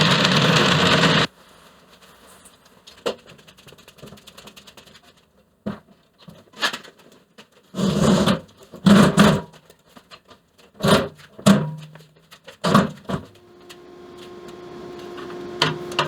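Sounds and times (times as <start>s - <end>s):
bandsaw running: 0.0s - 1.3s, 13.3s - 16.0s.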